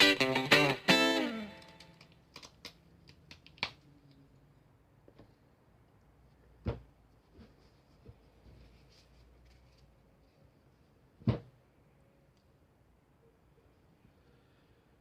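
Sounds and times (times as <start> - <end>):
plucked guitar music: 0.0 - 1.9.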